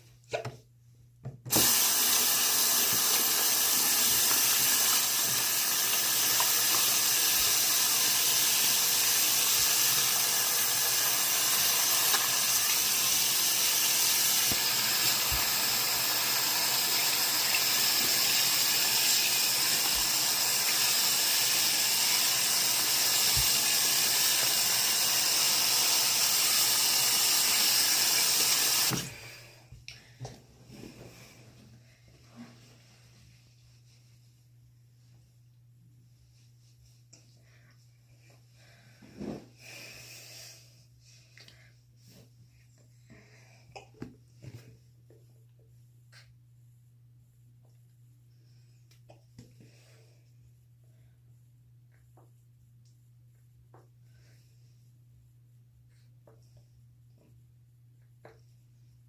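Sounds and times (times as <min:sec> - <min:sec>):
tap water running into sink: 0:01.5 - 0:29.1.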